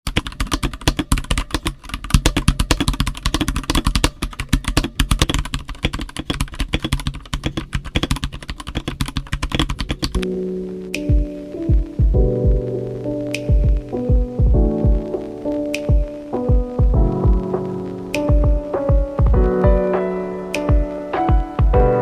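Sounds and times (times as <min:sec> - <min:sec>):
mechanical keyboard typing: 0:00.0 - 0:10.3
music: 0:09.6 - 0:22.0.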